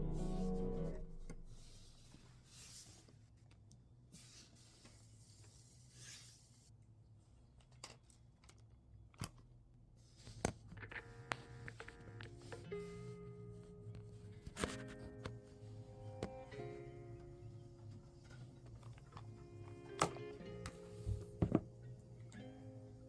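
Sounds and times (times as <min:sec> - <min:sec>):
faint held musical tones: 0:00.0 - 0:02.1, 0:10.9 - 0:23.0
faint hum: 0:00.0 - 0:02.1.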